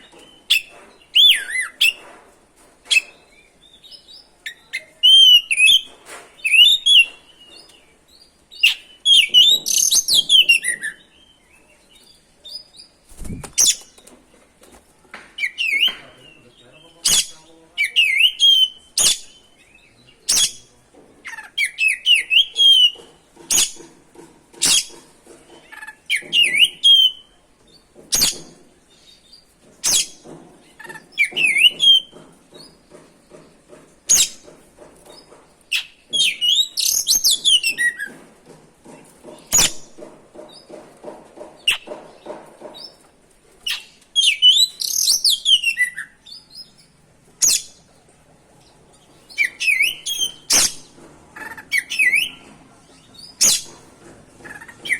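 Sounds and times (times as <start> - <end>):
songbird singing whistled phrases: 4.5 - 7.2, 17.1 - 19.2, 49.4 - 50.7.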